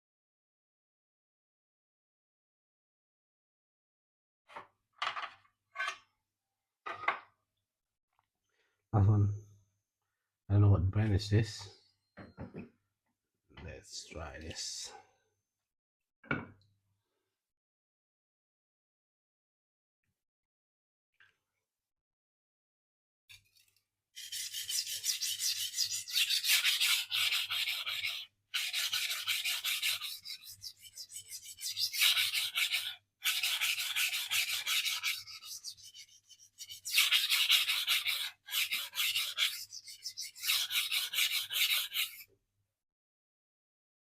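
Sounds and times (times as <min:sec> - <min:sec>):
knife scraping on sharpening stone: 0:23.4 - 0:42.3.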